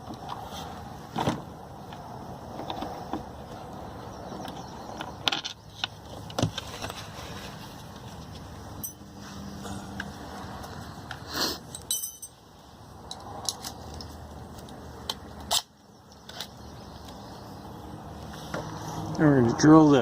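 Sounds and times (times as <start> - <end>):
metal tools clinking: 8.8 - 9.1, 11.6 - 12.4.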